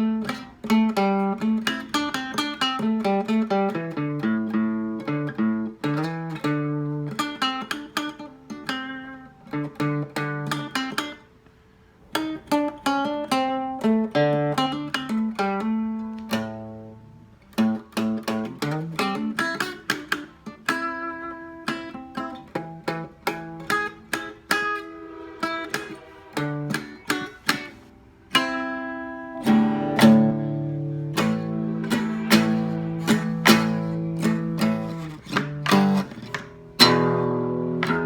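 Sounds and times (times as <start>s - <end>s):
blues acoustic guitar: 0.0s - 38.0s.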